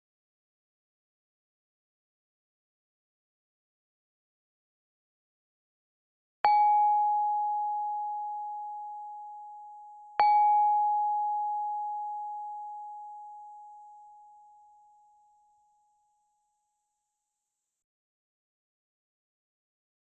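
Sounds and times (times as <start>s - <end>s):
high bell ding ringing: 6.5s - 16.2s.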